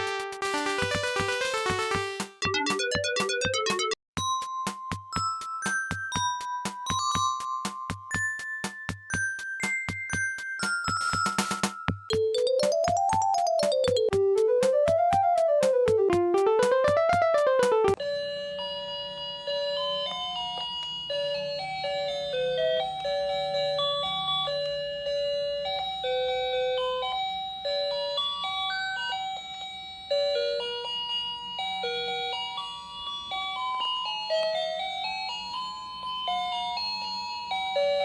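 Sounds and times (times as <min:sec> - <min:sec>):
chiming electronic melody: 0:00.6 - 0:14.1, 0:18.0 - 0:38.0.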